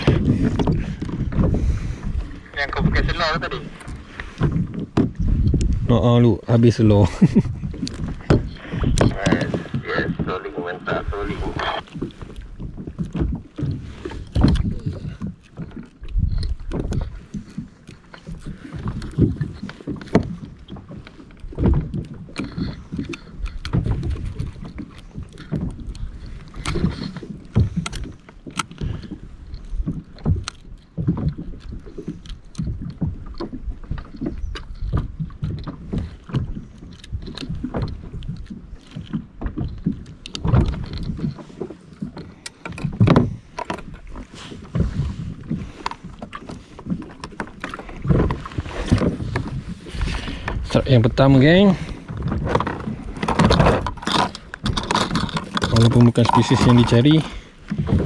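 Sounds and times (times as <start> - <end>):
water splashing against plastic hull: 0.0 - 58.0
sharp clicks and knocks: 52.3 - 57.3.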